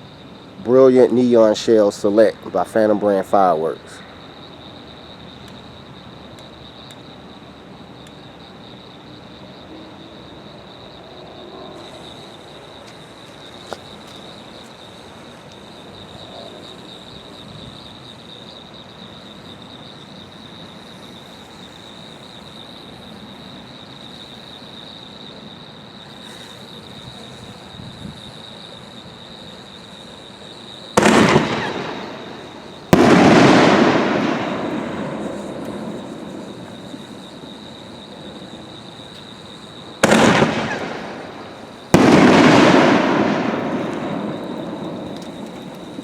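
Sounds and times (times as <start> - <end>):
firework launch boom: 31.0 - 37.0, 40.0 - 46.0
firework shell bursting: 31.0 - 37.0, 40.0 - 46.0.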